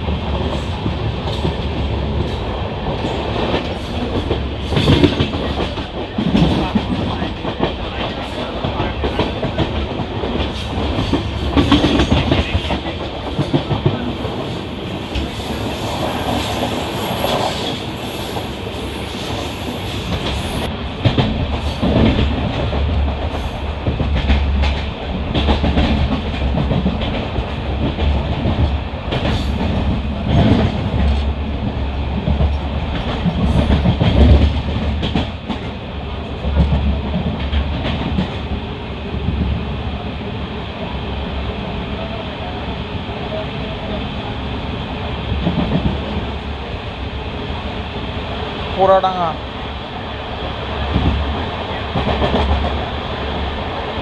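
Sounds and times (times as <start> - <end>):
train rumbling: 0.0 - 54.0
wheels clacking over rail joints: 0.3 - 38.6.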